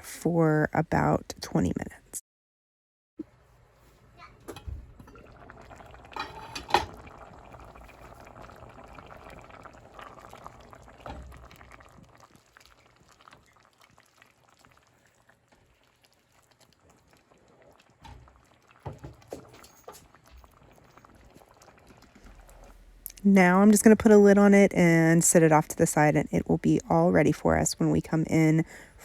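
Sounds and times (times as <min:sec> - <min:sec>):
pot simmering and bubbling: 0:03.2 - 0:29.0.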